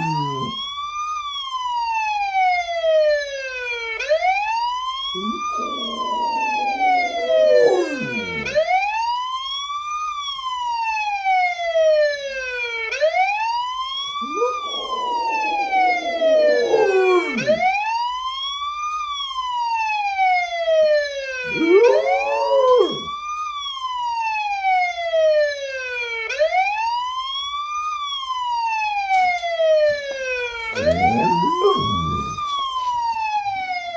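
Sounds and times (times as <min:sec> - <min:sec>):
dog howling: 0:00.0 - 0:00.6, 0:05.2 - 0:08.8, 0:14.2 - 0:17.8, 0:21.4 - 0:23.2, 0:29.2 - 0:33.0
wailing siren: 0:00.0 - 0:00.6, 0:05.1 - 0:08.8, 0:14.2 - 0:17.8, 0:21.4 - 0:23.2, 0:30.6 - 0:33.7.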